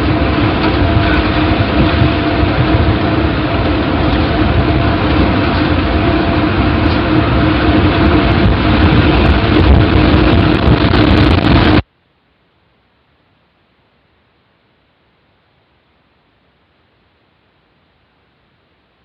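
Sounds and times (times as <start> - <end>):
steady rumbling roar: 0.0 - 11.8
low hum: 0.0 - 19.0.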